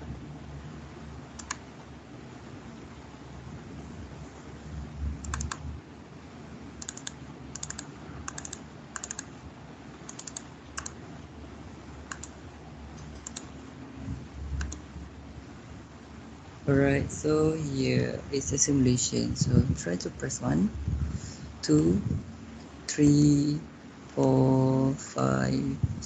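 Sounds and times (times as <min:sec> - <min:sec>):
faint room hum: 0:00.0 - 0:26.0
keyboard keys clicking: 0:01.4 - 0:01.6, 0:05.2 - 0:05.6, 0:06.8 - 0:09.3, 0:10.1 - 0:11.0, 0:12.1 - 0:13.5, 0:14.6 - 0:14.8.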